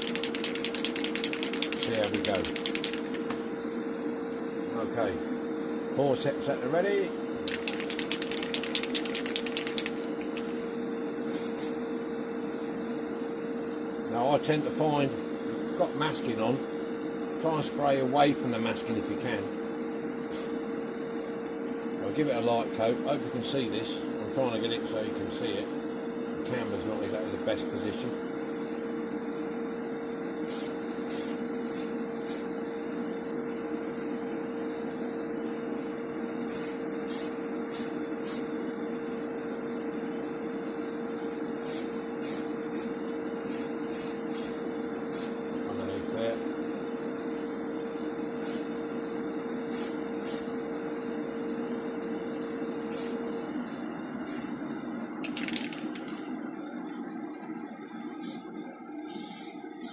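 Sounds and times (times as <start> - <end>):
aerosol spray can hissing: 0.0 - 3.2, 7.5 - 10.0, 11.3 - 11.8, 30.5 - 32.5, 36.5 - 38.5, 41.7 - 42.9, 43.5 - 45.4, 48.4 - 48.7, 49.8 - 50.5, 52.9 - 53.2, 59.1 - 59.9
quick clicks: 0.0 - 3.3, 7.4 - 10.5
extractor fan humming: 0.0 - 28.7.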